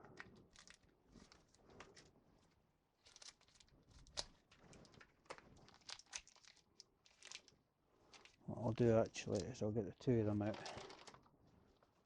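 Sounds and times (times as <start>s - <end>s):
small parts clicking and rustling: 3.0s - 9.6s, 10.4s - 12.0s.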